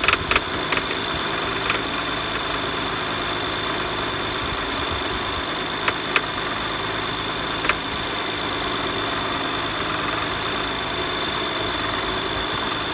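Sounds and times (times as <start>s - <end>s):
pulley rattling: 0.0s - 2.0s
sharp clicks: 0.0s - 2.0s, 5.8s - 6.3s, 7.6s - 7.8s
car engine idling: 0.0s - 12.6s.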